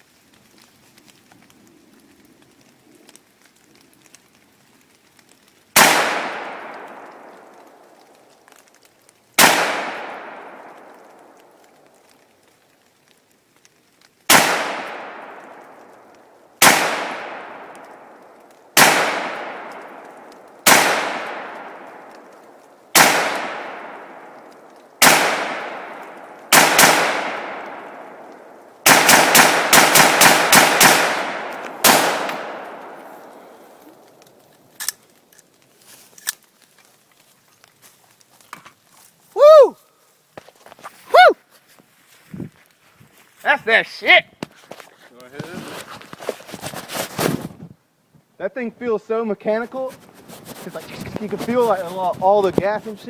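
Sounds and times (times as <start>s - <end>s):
rifle shots echoing: 5.8s - 7.9s, 9.4s - 11.4s, 14.3s - 22.3s, 22.9s - 34.1s.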